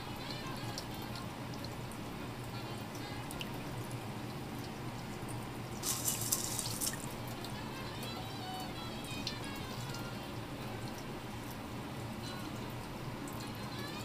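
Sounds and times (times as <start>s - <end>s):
water splashing in sink: 5.8s - 7.2s.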